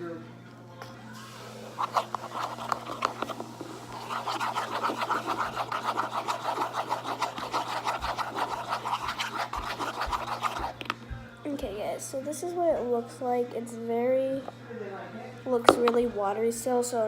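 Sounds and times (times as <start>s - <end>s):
utensil stirring wet slime in bowl: 1.7s - 11.0s, 15.7s - 16.1s.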